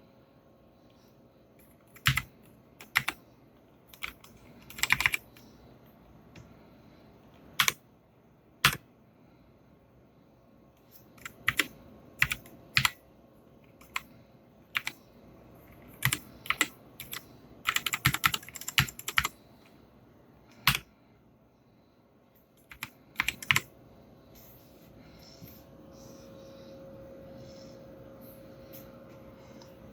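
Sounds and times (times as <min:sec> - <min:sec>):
mechanical keyboard keystrokes: 0:01.6 - 0:03.2, 0:03.9 - 0:05.3, 0:07.5 - 0:07.8, 0:08.6 - 0:08.8, 0:11.2 - 0:13.0, 0:14.8 - 0:15.0, 0:15.9 - 0:19.3, 0:20.6 - 0:20.9, 0:22.6 - 0:23.7.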